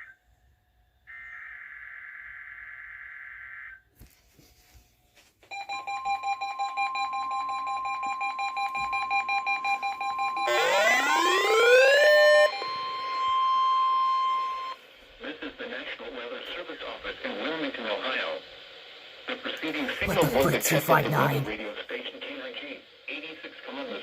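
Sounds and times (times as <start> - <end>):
steady warning alarm tone: 5.5 - 14.8
pulsing beeps: 9.3 - 14.8
buzzing alert: 10.4 - 14.8
rising siren sweep: 10.4 - 14.8.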